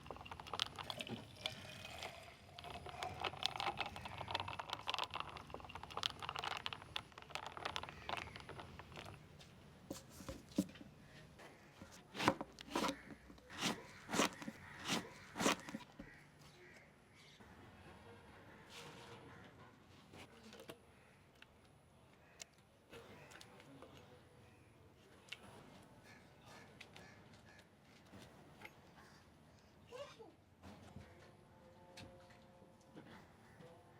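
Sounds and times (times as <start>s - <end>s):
scraping and clicking: 2.6s - 9.3s, 11.8s - 16.1s.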